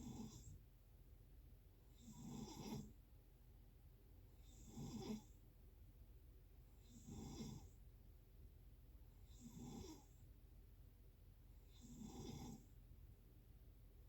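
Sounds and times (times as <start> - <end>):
faint snoring: 0.0 - 0.6, 1.9 - 3.0, 4.4 - 5.4, 6.8 - 7.8, 9.2 - 10.2, 11.6 - 12.7.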